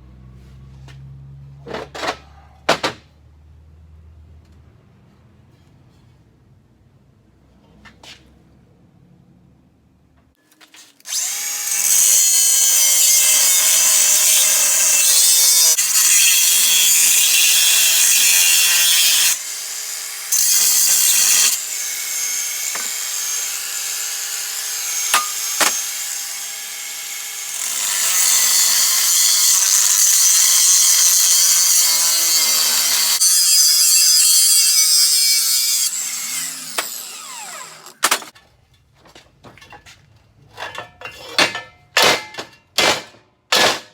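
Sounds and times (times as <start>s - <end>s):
power tool cutting metal: 11.1s - 38.4s.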